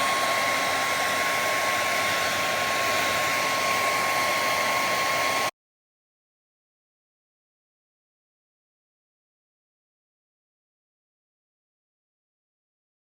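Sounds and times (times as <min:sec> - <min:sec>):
hair dryer blowing: 0:00.0 - 0:05.5.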